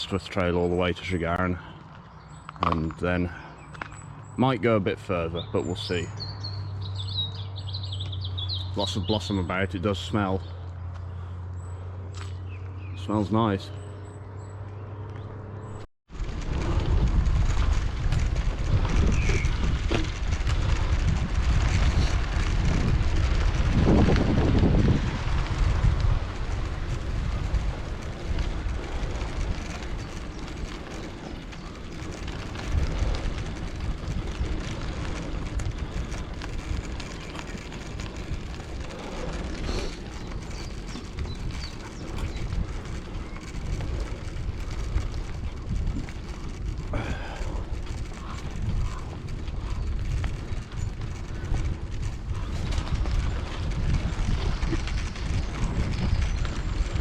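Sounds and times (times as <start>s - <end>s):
wind buffeting microphone: 0.0s - 14.6s, 15.4s - 57.0s
bicycle tyres rolling on trail: 0.0s - 57.0s.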